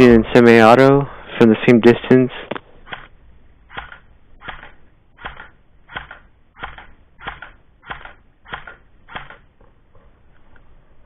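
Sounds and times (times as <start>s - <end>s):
airsoft gun shots: 3.7s - 9.5s.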